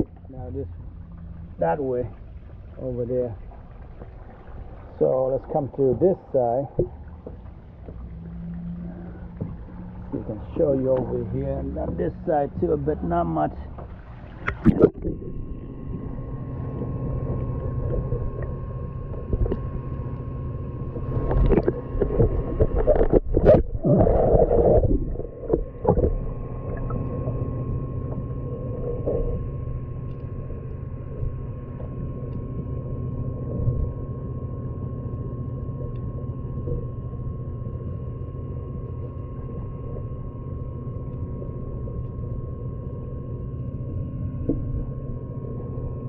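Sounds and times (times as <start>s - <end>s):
water splashes: 0.0s - 29.4s
faint hum: 0.0s - 46.0s
muffled underwater rumble: 0.0s - 46.0s.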